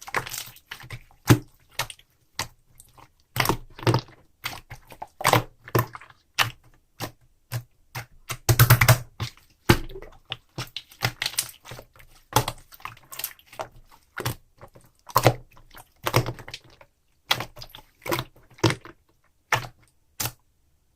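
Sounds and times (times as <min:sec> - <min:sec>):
slime clicking and popping: 0:03.3 - 0:11.5.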